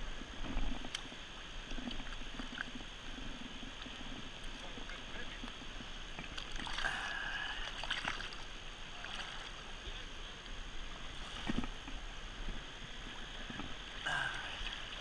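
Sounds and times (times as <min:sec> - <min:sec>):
river current rushing: 0:06.4 - 0:15.0.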